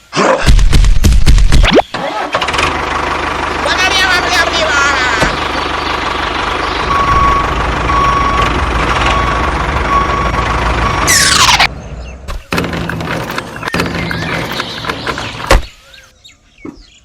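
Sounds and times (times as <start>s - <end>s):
heavy vehicle engine running: 2.0s - 15.6s
reversing beep: 6.8s - 8.5s, 9.1s - 11.7s.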